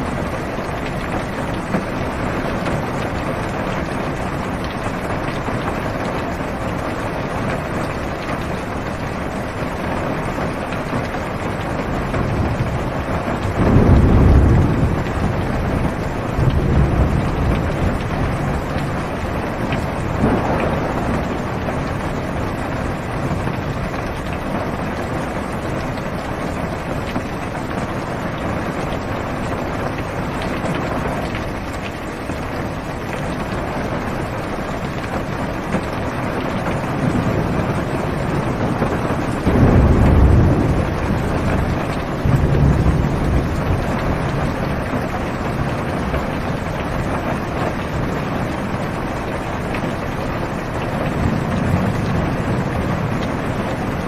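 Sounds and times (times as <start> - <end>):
heavy rain on car roof: 0.0 - 54.0
low thunder rumble: 11.6 - 54.0.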